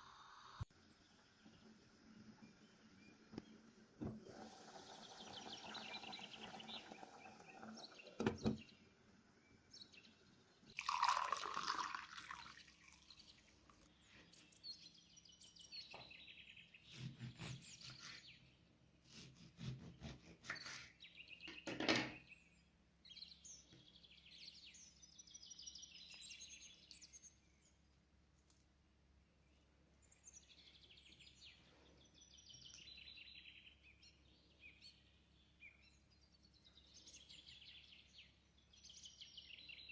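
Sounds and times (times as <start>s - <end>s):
birds chirping: 4.4s - 18.6s.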